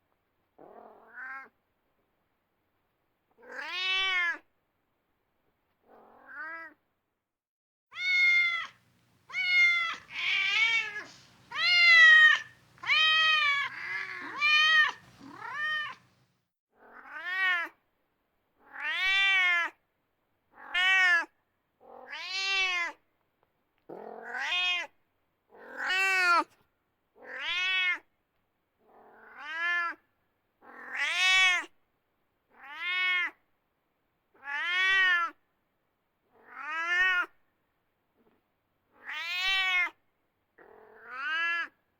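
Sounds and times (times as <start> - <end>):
cat meowing: 7.9 - 16.2.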